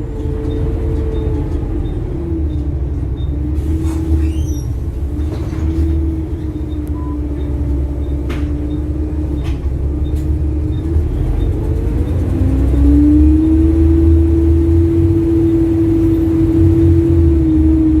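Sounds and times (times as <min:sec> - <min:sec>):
bus diesel engine drone: 0:00.0 - 0:18.0
engine ticking: 0:04.7 - 0:18.0.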